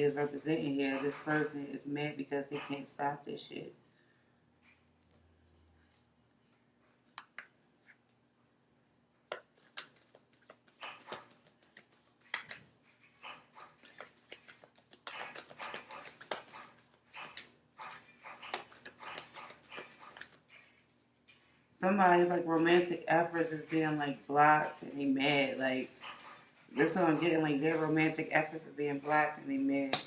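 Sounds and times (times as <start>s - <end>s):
cards being shuffled: 9.3s - 20.8s.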